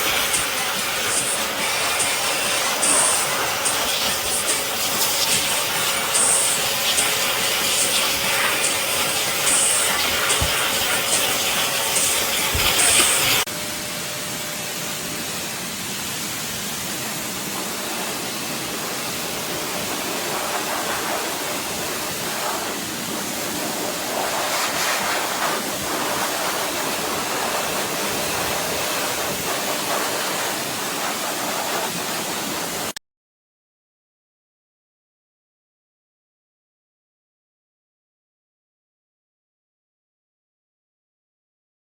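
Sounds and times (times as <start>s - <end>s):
pet dryer blowing air: 0.0s - 33.0s.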